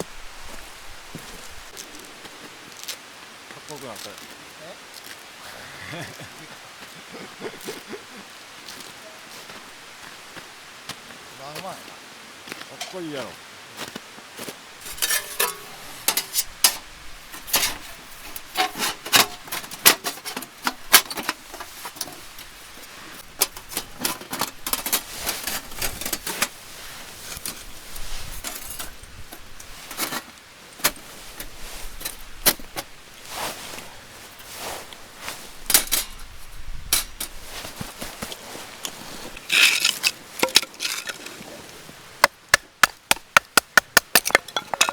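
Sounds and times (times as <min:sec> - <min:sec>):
objects clicking and clinking: 0:14.8 - 0:22.2, 0:39.3 - 0:41.5, 0:44.0 - 0:44.9.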